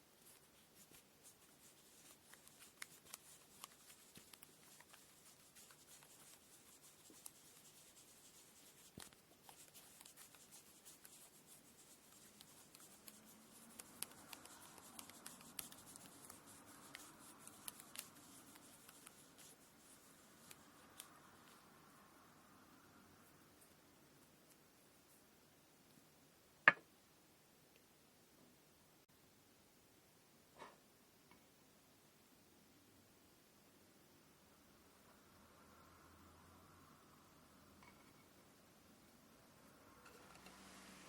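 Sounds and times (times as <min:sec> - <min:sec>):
soft rubbing of thread: 0:00.0 - 0:22.1, 0:39.8 - 0:41.0.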